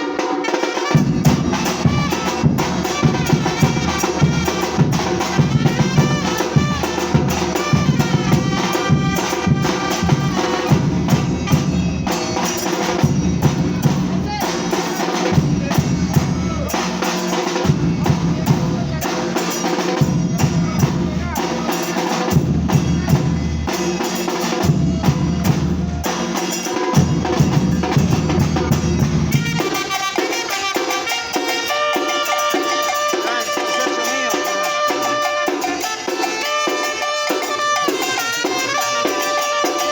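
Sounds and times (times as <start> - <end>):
percussion band drum groove: 0.0 - 39.9
held higher-pitched notes: 0.8 - 39.9.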